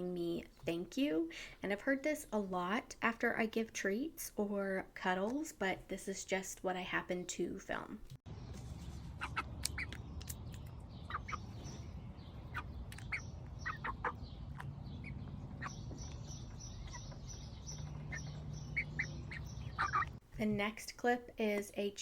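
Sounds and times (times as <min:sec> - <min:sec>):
chick chirping: 0:08.5 - 0:20.2.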